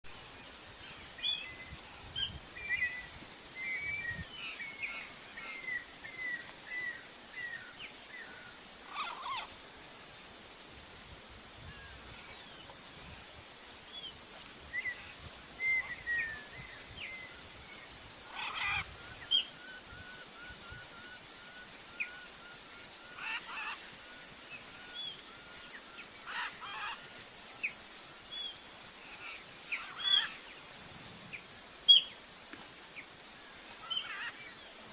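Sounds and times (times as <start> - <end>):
high-pitched insect trill: 0.1 - 34.9
birds chirping and calling: 18.3 - 21.2, 28.4 - 30.4.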